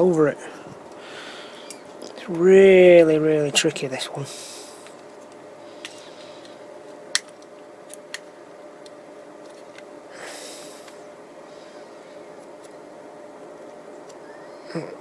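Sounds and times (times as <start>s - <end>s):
low room hum: 0.0s - 15.0s
soft breath-like hiss: 10.1s - 12.2s.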